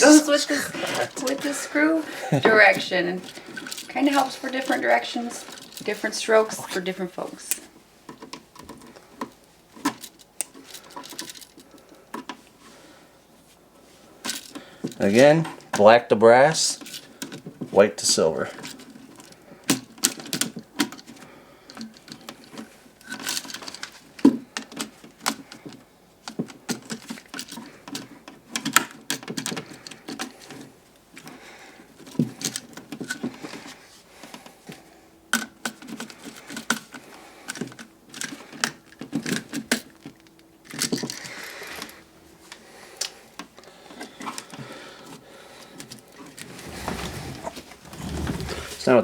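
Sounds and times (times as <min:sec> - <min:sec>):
clicks and scrapes of wires: 0:02.5 - 0:12.4.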